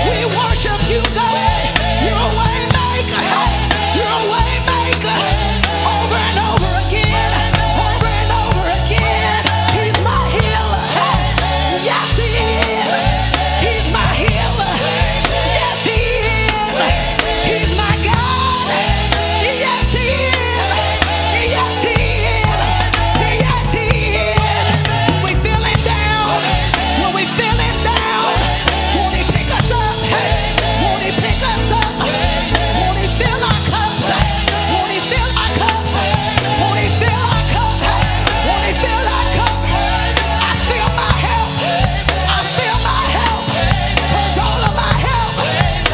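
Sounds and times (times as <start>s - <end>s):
worship band playing: 0.0s - 45.9s.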